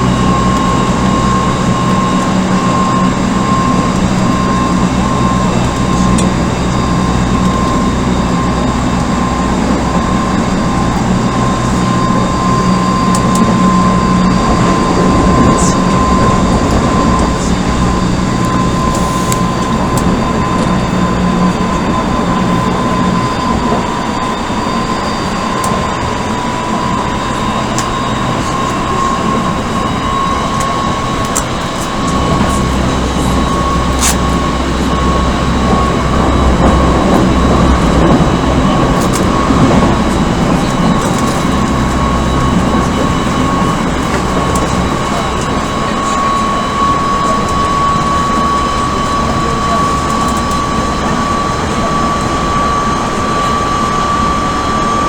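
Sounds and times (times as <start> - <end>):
high inverter whine: 0.0 - 55.0
low hum: 0.0 - 55.0
train motors and wheels rumbling: 0.0 - 55.0.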